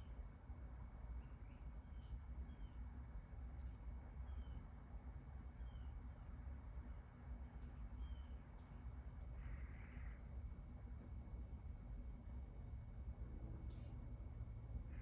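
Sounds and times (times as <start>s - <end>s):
low rumble of city noise: 0.0s - 15.0s
small birds chirping: 1.1s - 4.7s, 5.5s - 10.2s, 10.8s - 11.7s, 12.4s - 14.2s.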